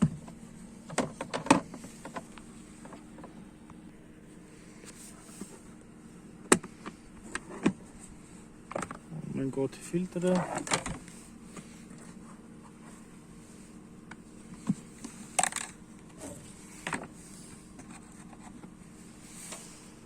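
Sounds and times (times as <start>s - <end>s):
steady low hum: 0.0s - 20.0s
plastic parts clicking and knocking: 15.4s - 15.8s.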